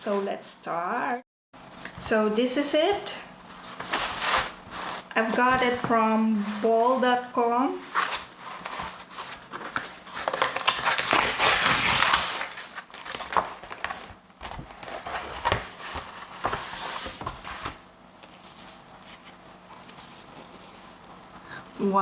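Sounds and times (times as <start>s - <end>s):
packaging rustling and crinkling: 3.5s - 5.9s, 7.8s - 21.0s.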